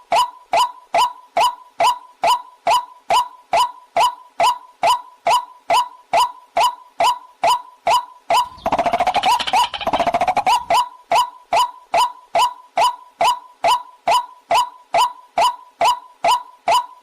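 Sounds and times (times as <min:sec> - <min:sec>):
bird chattering run: 0:08.4 - 0:10.8.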